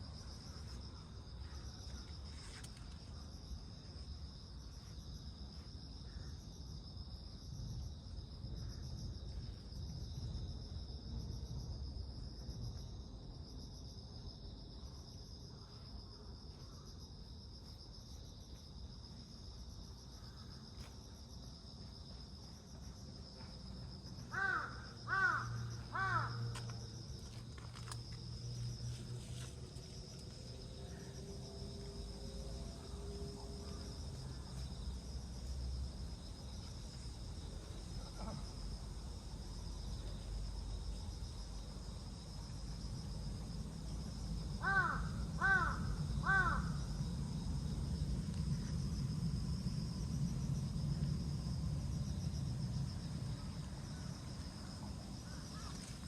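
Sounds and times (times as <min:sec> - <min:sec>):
insects droning: 0:00.0 - 0:56.0
crow cawing: 0:24.3 - 0:26.4, 0:44.6 - 0:46.8.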